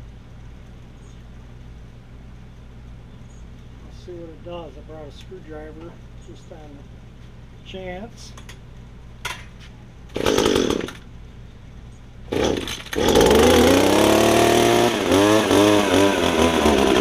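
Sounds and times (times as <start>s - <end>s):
hedge trimmer engine starting: 10.1s - 11.1s, 12.3s - 17.0s.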